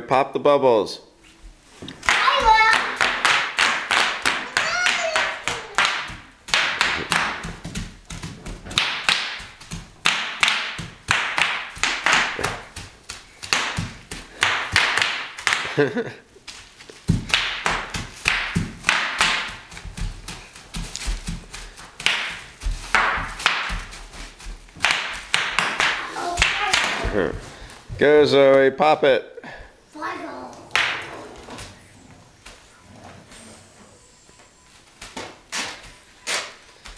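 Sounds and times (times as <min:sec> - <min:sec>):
bubble wrap popping: 0:15.2 - 0:27.4.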